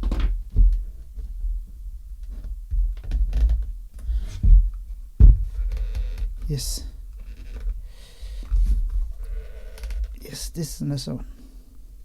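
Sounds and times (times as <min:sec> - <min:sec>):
loud thump: 0:05.2 - 0:05.5.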